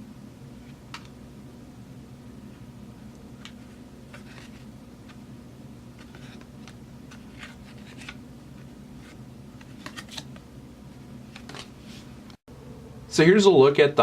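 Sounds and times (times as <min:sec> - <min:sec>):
low steady hum: 0:00.0 - 0:14.0
trading cards sliding and rustling: 0:03.4 - 0:05.2, 0:06.0 - 0:10.4, 0:11.3 - 0:12.3.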